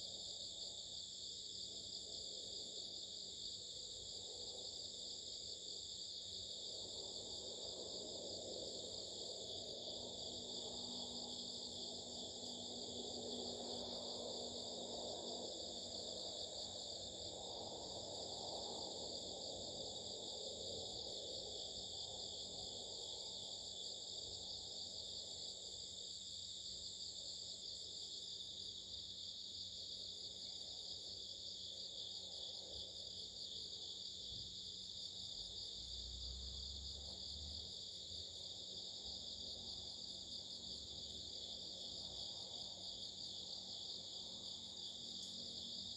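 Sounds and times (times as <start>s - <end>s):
faint pulsing insect song: 0.0s - 45.9s.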